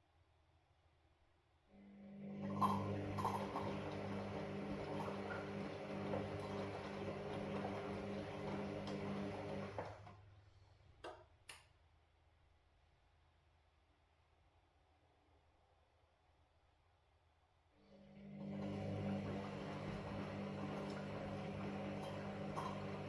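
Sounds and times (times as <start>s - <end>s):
washing machine running: 1.9s - 10.3s, 17.9s - 23.0s.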